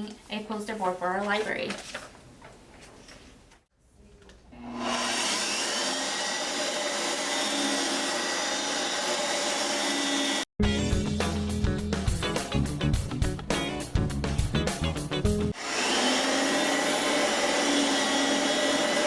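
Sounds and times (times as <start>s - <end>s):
vacuum cleaner motor whining: 4.6s - 10.4s, 15.6s - 19.0s.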